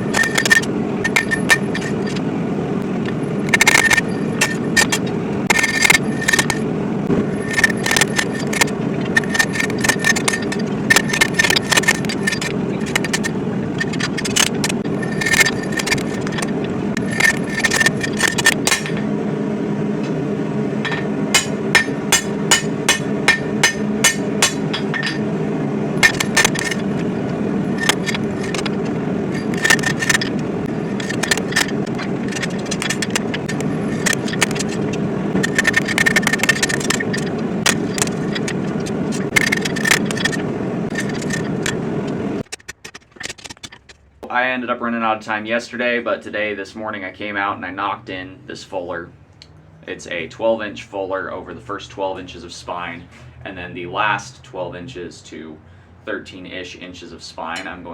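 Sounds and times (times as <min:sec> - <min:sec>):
hammer striking hot steel: 0:00.0 - 0:02.2, 0:03.4 - 0:19.2, 0:20.8 - 0:25.4, 0:26.0 - 0:40.4
forge burner roaring: 0:00.0 - 0:42.6.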